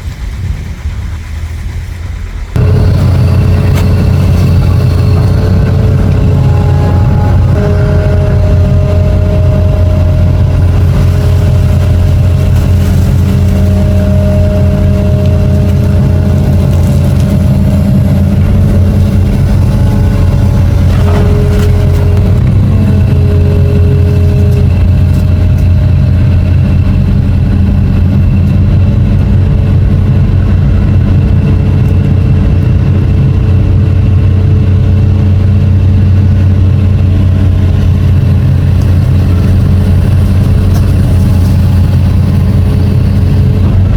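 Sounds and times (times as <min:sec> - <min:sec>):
excavator diesel engine humming: 0:00.0 - 0:43.9
thin whining tones: 0:02.6 - 0:27.6.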